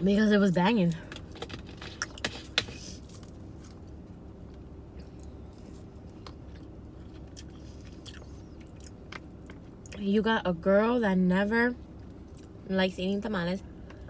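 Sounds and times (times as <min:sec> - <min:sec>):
low steady hum: 0:00.0 - 0:14.0
person chewing food: 0:04.9 - 0:10.0.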